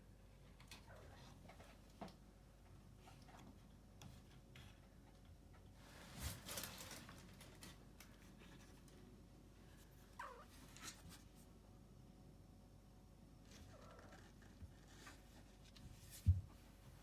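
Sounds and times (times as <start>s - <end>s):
kitten meowing faintly: 10.2s - 10.6s.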